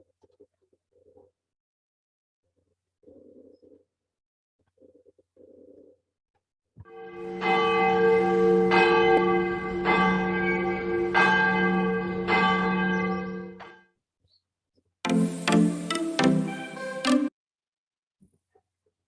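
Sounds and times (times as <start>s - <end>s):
bell ringing: 6.9s - 13.7s.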